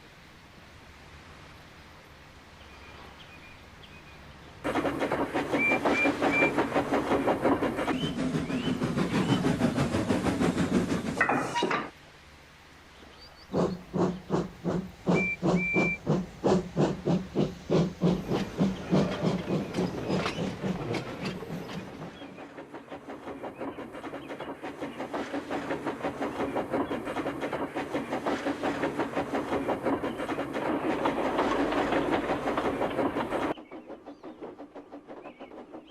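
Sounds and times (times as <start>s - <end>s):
steam locomotive running: 3.7s - 35.9s
steam engine chuffing: 4.6s - 11.3s, 13.4s - 35.9s
short high whistle peeps: 15.2s - 16.0s.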